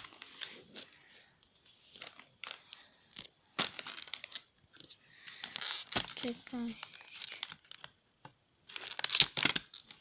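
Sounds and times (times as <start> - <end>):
plastic packaging crinkling: 1.9 - 4.8, 5.4 - 8.0, 8.6 - 10.0.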